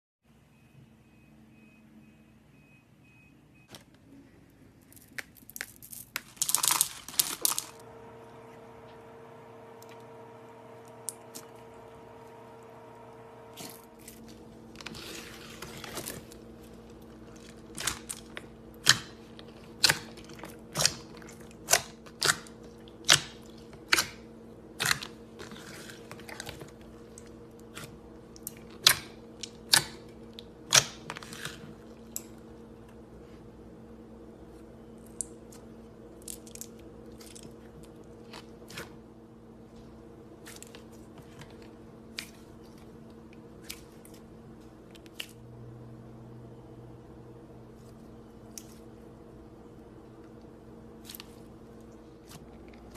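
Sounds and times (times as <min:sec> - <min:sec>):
steady low hum: 0:07.4 - 0:52.9
slime squishing: 0:13.5 - 0:32.1, 0:35.0 - 0:39.1, 0:39.8 - 0:45.5, 0:50.3 - 0:52.9.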